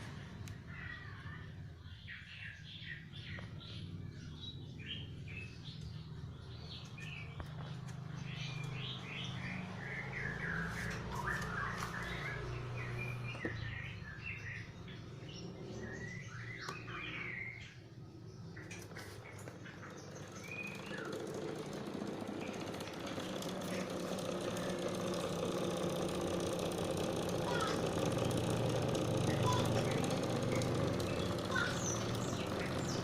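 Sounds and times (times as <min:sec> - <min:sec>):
electric fan motor hum: 0:05.0 - 0:14.0, 0:17.8 - 0:33.0.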